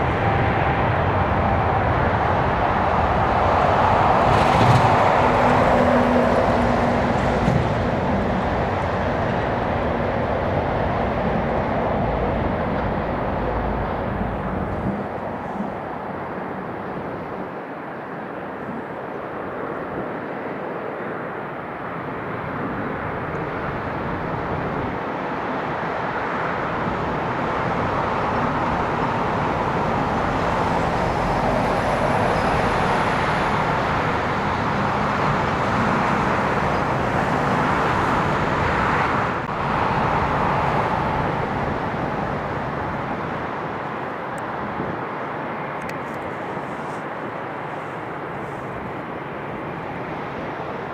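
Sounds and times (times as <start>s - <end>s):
jet airliner taking off: 0.0s - 17.4s, 26.5s - 44.4s.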